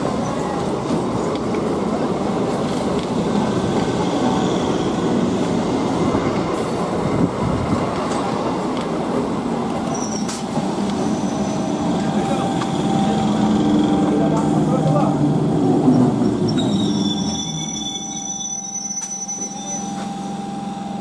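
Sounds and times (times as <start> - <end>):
train wheels rumbling: 0.0 - 20.4
wheels squealing: 15.9 - 20.0.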